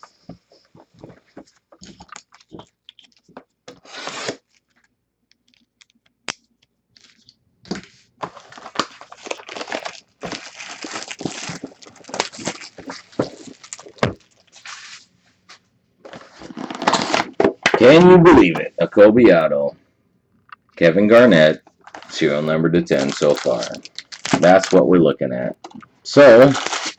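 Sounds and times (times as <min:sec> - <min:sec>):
plastic wrap tearing and crinkling: 0:03.8 - 0:04.8, 0:08.2 - 0:15.1, 0:16.1 - 0:18.5, 0:21.2 - 0:25.0, 0:25.6 - 0:26.9.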